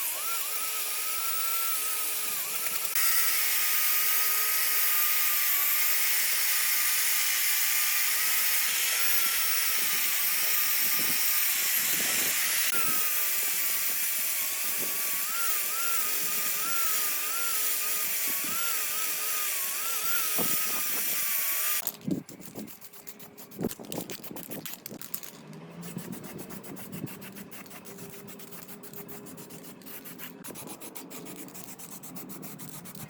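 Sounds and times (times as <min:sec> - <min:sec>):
electric power tool whine: 0:00.0 - 0:22.0.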